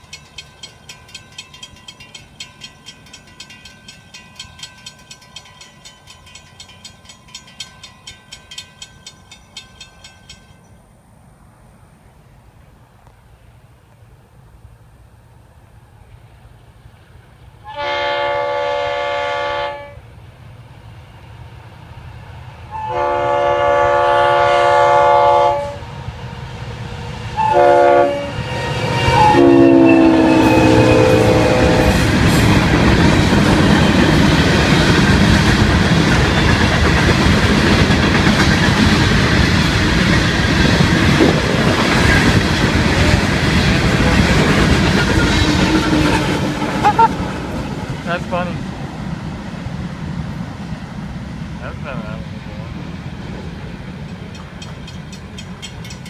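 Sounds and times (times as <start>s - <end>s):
train wheels clattering: 0.0s - 10.7s, 29.2s - 48.0s, 53.2s - 56.0s
train rumbling by: 0.0s - 56.0s
locomotive air horn blasts: 17.6s - 20.0s, 22.7s - 25.9s, 27.4s - 32.0s.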